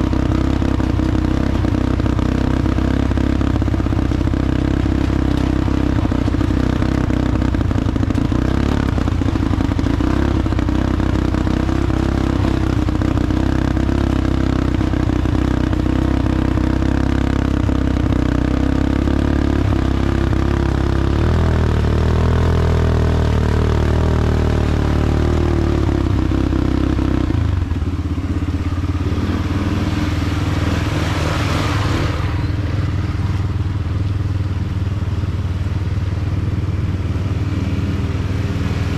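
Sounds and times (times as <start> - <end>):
atv engine running: 0.0 - 38.9
rush of noise: 28.8 - 34.0.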